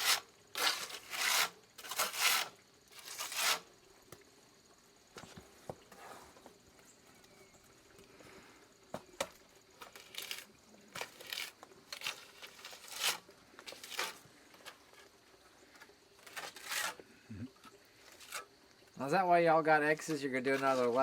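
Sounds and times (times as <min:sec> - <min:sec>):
trowel scraping wet mortar: 0:00.0 - 0:03.7, 0:09.8 - 0:14.8, 0:16.2 - 0:17.0, 0:18.1 - 0:18.5, 0:20.5 - 0:21.0.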